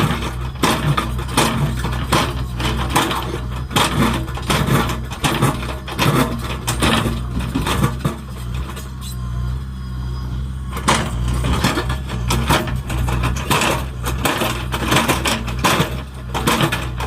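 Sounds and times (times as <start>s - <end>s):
bucket crunching and scraping ground: 0.0s - 9.2s
backhoe diesel engine running: 0.0s - 17.0s.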